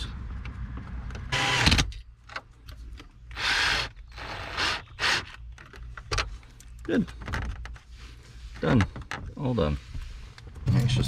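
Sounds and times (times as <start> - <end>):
power drill driving screws: 1.3 - 1.9, 3.3 - 5.4.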